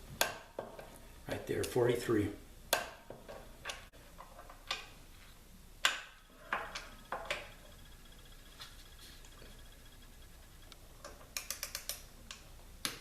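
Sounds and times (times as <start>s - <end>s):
metallic clicks of hand tools: 10.7s - 13.0s.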